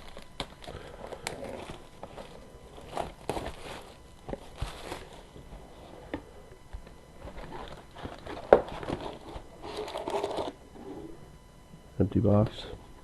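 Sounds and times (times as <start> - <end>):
cardboard box and foil packs rustling: 0.0 - 6.2, 7.2 - 10.6.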